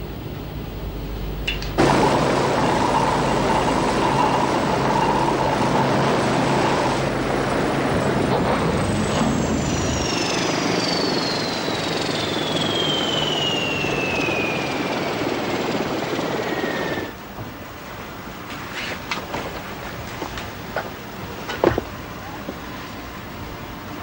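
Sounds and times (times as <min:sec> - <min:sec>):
helicopter engine and rotors: 0:00.6 - 0:17.2
high whine falling in pitch: 0:01.5 - 0:17.2.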